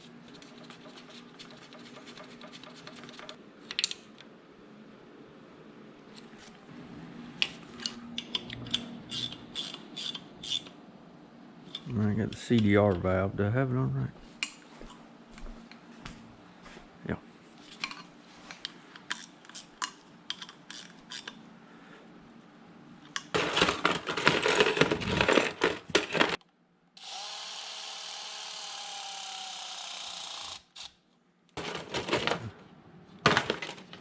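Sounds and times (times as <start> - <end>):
hand tools clinking and rattling: 23.4 - 26.4, 31.6 - 32.5
small power tool motor whine: 27.0 - 31.0.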